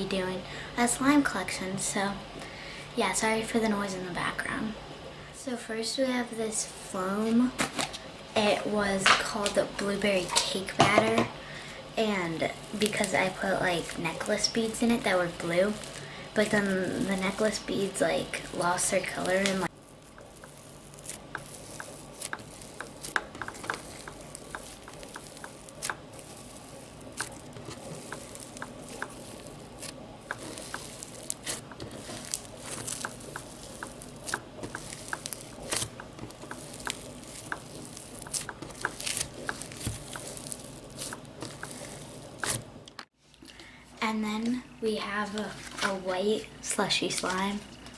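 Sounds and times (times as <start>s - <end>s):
sticky pops and crackles: 12.4s - 42.7s.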